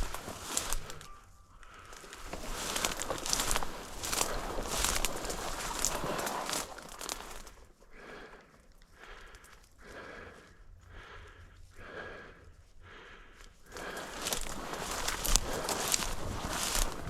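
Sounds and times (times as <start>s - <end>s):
footsteps crunching through dry cover: 0.0s - 17.0s
heavy breathing: 0.0s - 17.0s.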